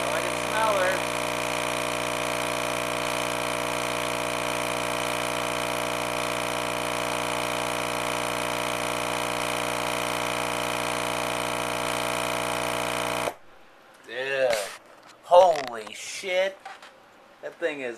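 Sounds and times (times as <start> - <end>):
subwoofer mains buzz: 0.0 - 13.9.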